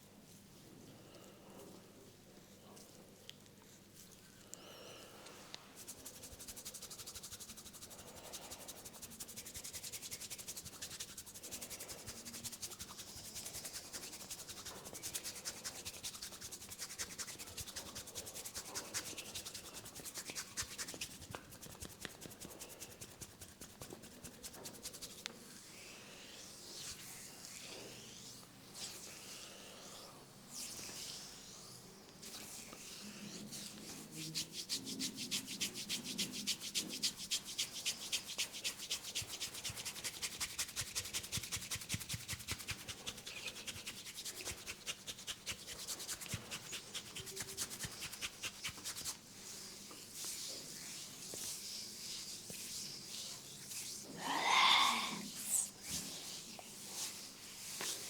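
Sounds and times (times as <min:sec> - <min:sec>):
fingers rubbing through hair: 0:05.8 - 0:25.3, 0:32.2 - 0:58.0.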